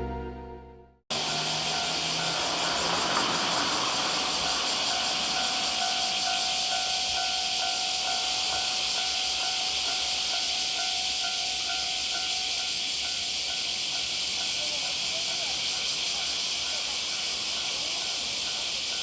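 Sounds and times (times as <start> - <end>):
level crossing alarm ringing: 1.1 - 15.4
steady loud hiss: 1.2 - 19.0.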